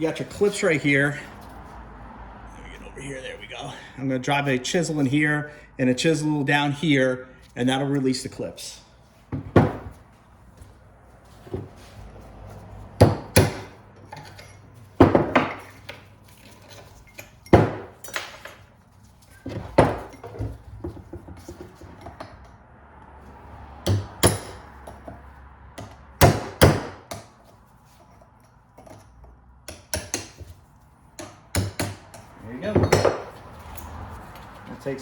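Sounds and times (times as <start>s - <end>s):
hammer striking chisel on metal: 13.0s - 15.6s, 23.8s - 24.7s, 29.7s - 30.5s, 31.2s - 33.4s.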